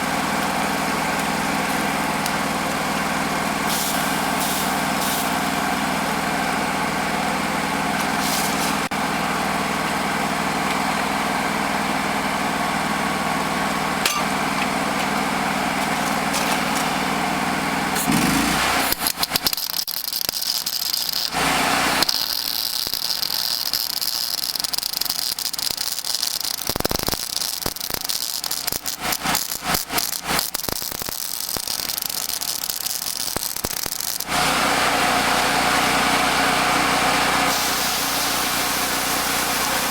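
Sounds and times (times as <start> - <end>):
welding arc crackling: 0.0 - 7.2, 7.8 - 8.9, 15.5 - 34.8, 37.5 - 39.9
welding machine engine running: 0.0 - 39.9.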